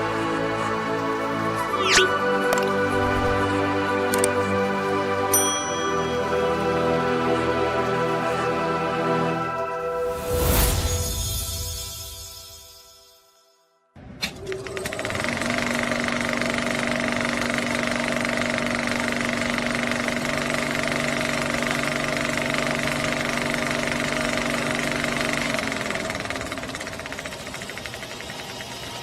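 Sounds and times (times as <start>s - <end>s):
machine rattling and whining: 0.0s - 5.1s, 14.0s - 29.0s.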